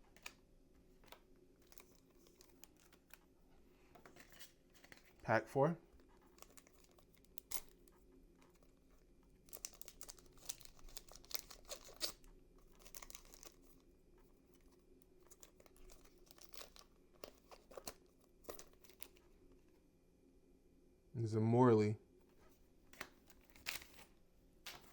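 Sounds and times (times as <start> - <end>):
wrapper being torn and crinkled: 6.3 - 7.8, 9.4 - 13.8, 15.2 - 19.2, 23.0 - 24.1.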